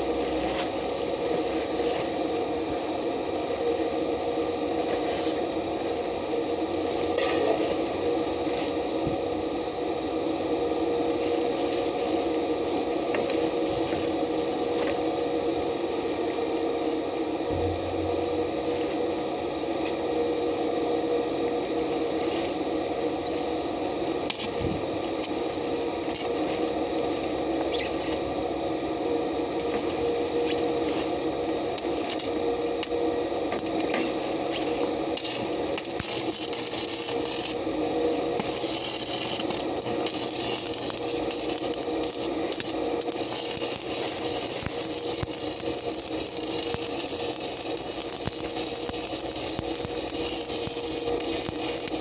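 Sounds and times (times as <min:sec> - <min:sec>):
low machine hum: 0:17.4 - 0:20.1, 0:35.4 - 0:52.0
welding arc crackling and hissing: 0:33.6 - 0:52.0.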